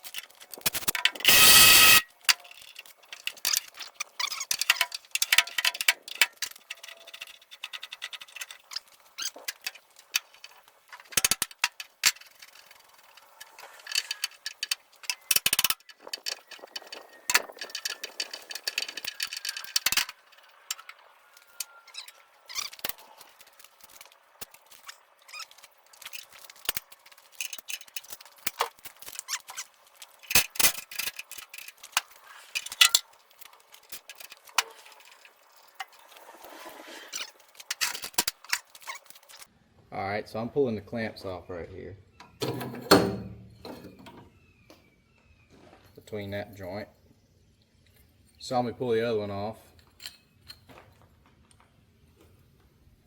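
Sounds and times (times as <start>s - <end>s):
metal clinks and rattles: 0.0s - 36.2s
ratchet clicking: 0.7s - 2.0s.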